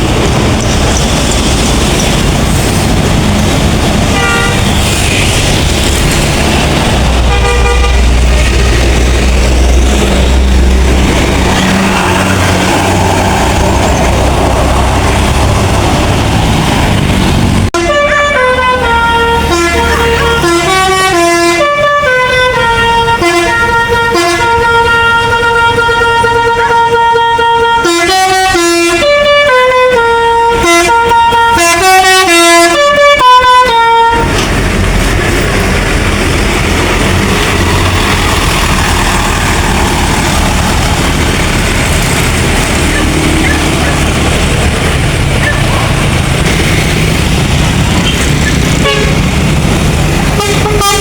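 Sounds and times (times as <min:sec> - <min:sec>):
steady vehicle noise: 0:00.0 - 0:51.0
musical bus horn melody: 0:04.0 - 0:05.4, 0:07.2 - 0:08.6, 0:17.7 - 0:34.5, 0:48.0 - 0:49.5, 0:50.2 - 0:51.0.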